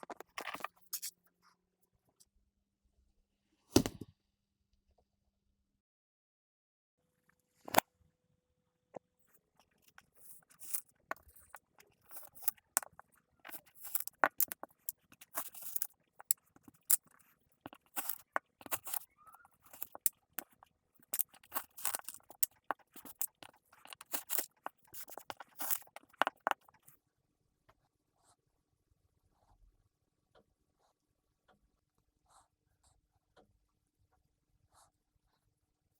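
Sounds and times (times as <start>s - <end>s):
sand being cut and squished: 17.7s - 20.1s.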